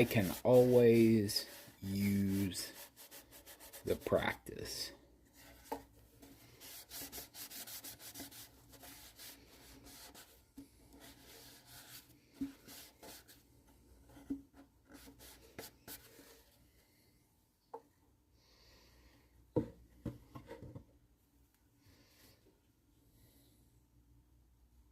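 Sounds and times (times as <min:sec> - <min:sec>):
cloth rubbing on wood: 0:00.0 - 0:04.2, 0:06.6 - 0:10.3.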